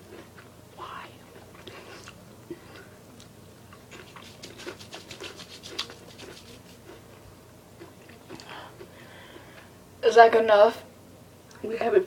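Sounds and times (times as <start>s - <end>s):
crunchy chips being chewed: 1.3s - 7.2s.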